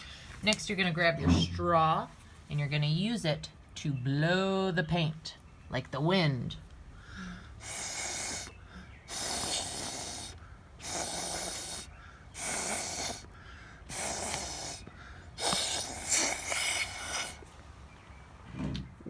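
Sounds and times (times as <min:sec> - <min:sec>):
breathy puffs through a straw: 0:07.0 - 0:17.5.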